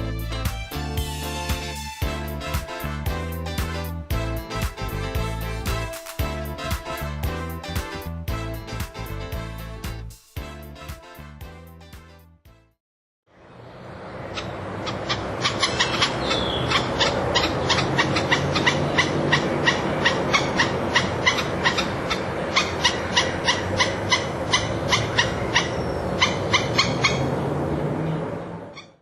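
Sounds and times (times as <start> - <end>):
woodpecker calling sharp notes: 14.4 - 27.3.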